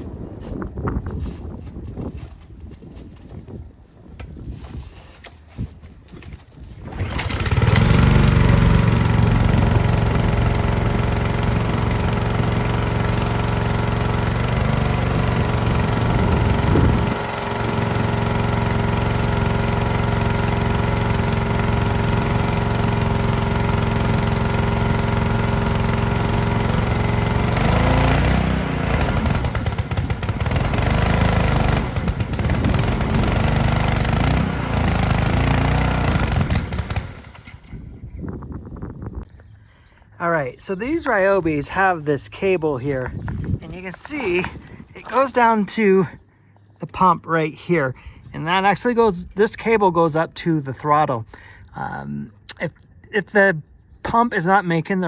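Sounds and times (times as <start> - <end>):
pressure washer engine running: 6.8 - 37.8.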